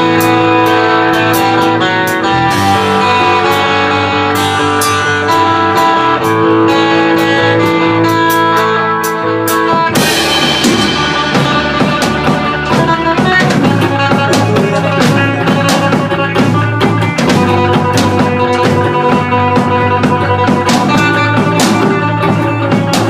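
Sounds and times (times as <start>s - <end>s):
instrumental rock music: 0.0s - 23.0s
cymbal crash: 10.0s - 12.9s.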